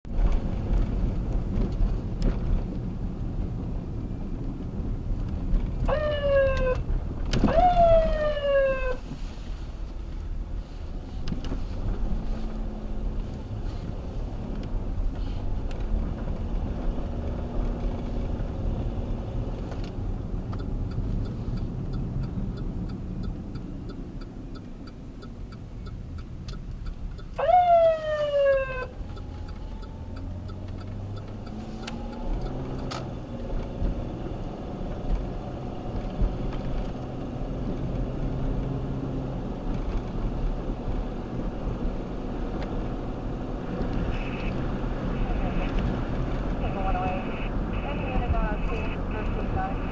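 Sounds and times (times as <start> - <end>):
vehicle engine and road noise: 0.0 - 49.9
electronic siren blips: 5.9 - 6.8, 7.5 - 9.0, 27.4 - 32.6
regular ticking: 19.7 - 33.9.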